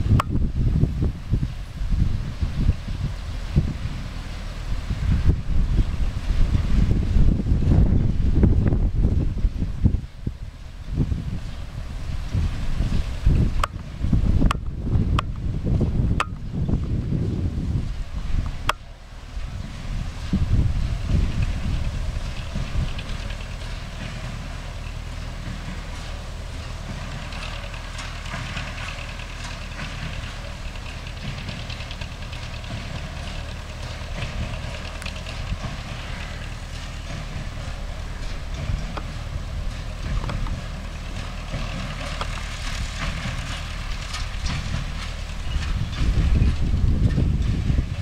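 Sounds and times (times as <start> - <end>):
hay baler clicking and clattering: 0.0 - 48.0
tractor diesel engine running: 0.0 - 48.0.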